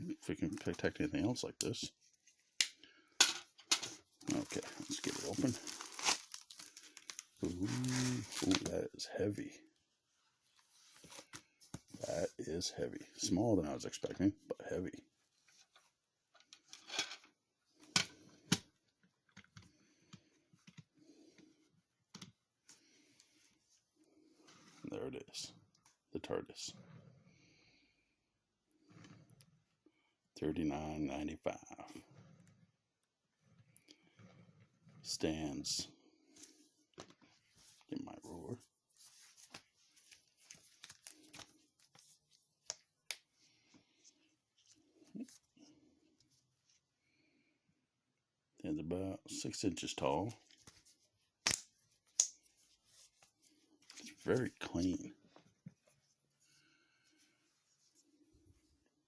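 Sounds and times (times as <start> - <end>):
packaging rustling: 4.2 - 8.7.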